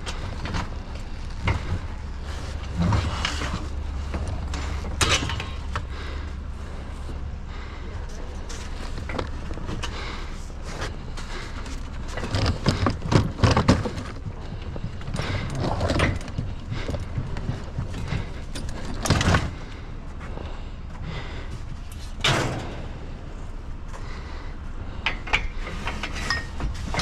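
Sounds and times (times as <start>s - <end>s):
scrap metal knocking and clattering: 0.0s - 5.9s, 10.8s - 19.9s, 24.9s - 27.0s.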